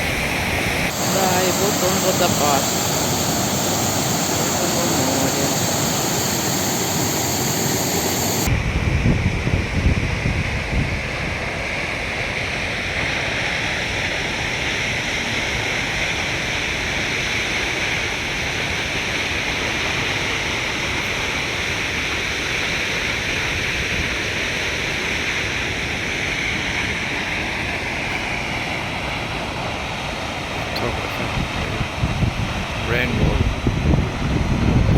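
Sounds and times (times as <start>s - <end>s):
waterfall roaring: 0.0s - 8.5s.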